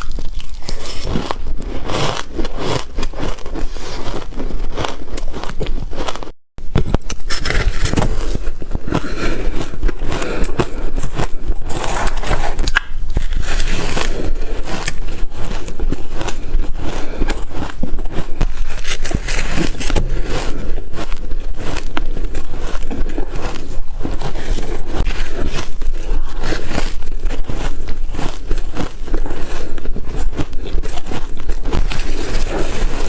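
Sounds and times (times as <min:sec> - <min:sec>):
ice being chewed: 0:00.0 - 0:06.4, 0:07.0 - 0:33.0
squeaky grinding of ice: 0:07.3 - 0:33.0.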